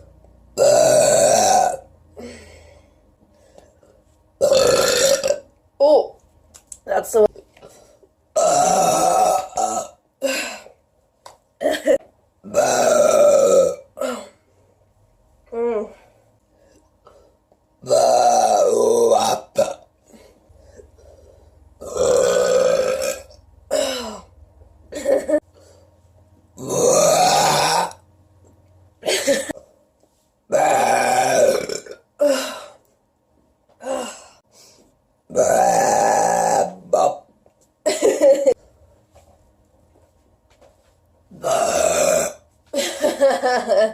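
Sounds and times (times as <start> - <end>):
woman burping: 0.6 - 1.9, 4.4 - 5.5, 8.3 - 10.7, 11.6 - 14.4, 17.8 - 19.9, 21.8 - 24.3, 24.9 - 25.4, 26.6 - 28.0, 29.0 - 29.7, 30.5 - 32.8, 35.3 - 38.6, 41.4 - 43.2.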